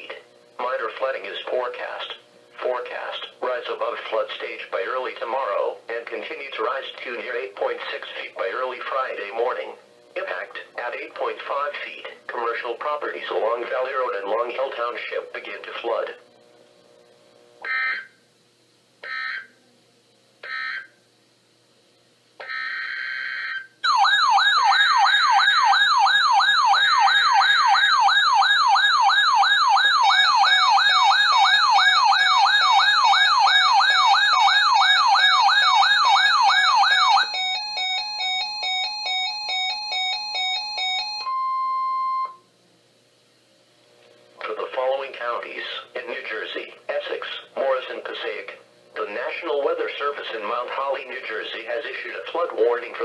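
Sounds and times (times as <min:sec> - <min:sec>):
warbling siren-like alert tone: 0:17.6 - 0:18.1, 0:19.0 - 0:19.6, 0:20.4 - 0:21.0, 0:22.4 - 0:42.4
pulsing beeping tones: 0:22.5 - 0:42.4
brief steady tone: 0:41.2 - 0:42.5.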